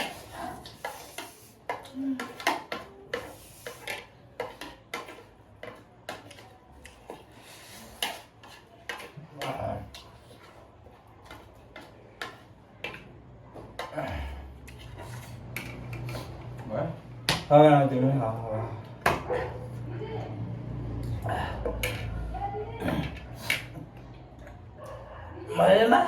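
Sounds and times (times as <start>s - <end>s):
utensils clicking against bowls: 14.6s - 16.5s.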